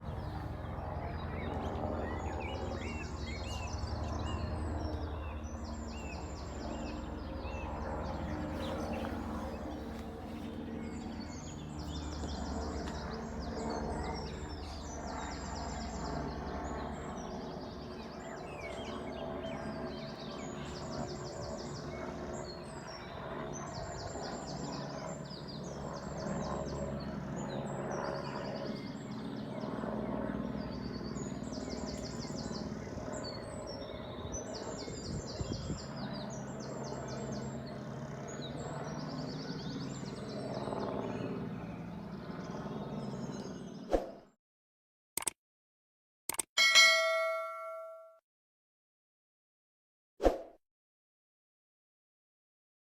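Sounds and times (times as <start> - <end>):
distant helicopter: 0.0 - 44.1
birds chirping: 0.1 - 26.9.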